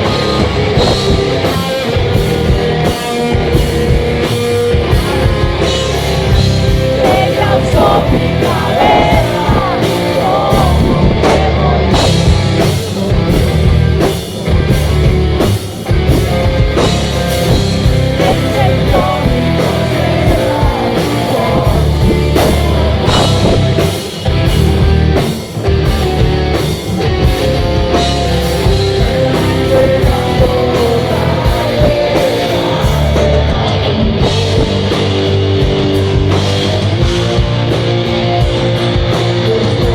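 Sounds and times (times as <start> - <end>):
rock band playing live: 0.0 - 39.9
person singing: 6.8 - 13.4, 18.0 - 24.1, 28.8 - 34.9.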